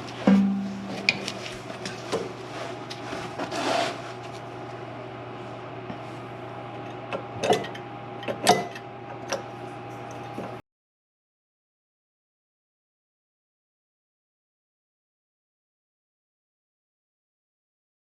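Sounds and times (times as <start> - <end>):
steady background hum: 0.0 - 10.6.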